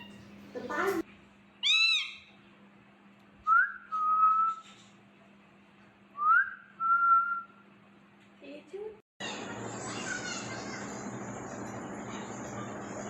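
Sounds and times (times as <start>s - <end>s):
person whistling: 6.2s - 7.6s.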